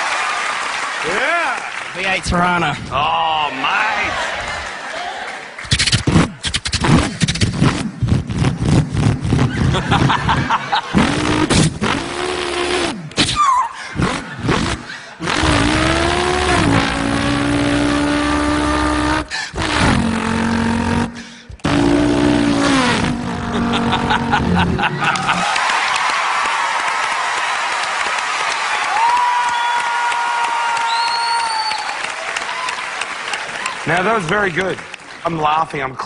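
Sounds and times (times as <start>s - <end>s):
man imitating revving car engine: 10.9s - 13.0s, 14.0s - 25.4s.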